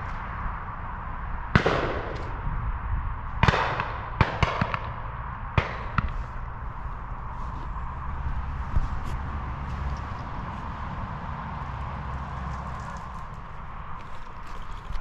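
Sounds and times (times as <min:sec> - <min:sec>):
shotgun shots: 0:01.6 - 0:02.4, 0:03.4 - 0:05.0, 0:05.6 - 0:06.2.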